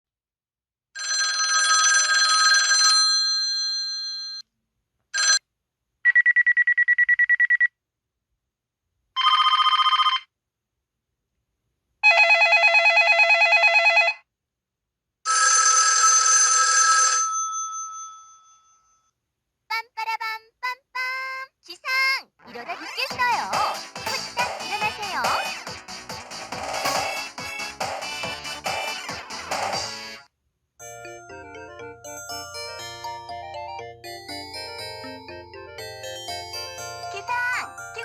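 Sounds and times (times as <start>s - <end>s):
mobile phone ringtones: 9.2s - 10.3s, 30.8s - 38.0s.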